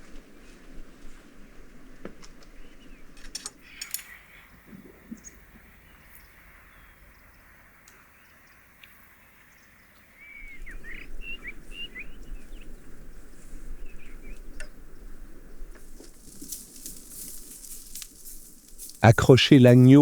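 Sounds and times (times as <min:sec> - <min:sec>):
birds chirping: 0:02.4 - 0:20.0
handling rustle: 0:15.8 - 0:20.0.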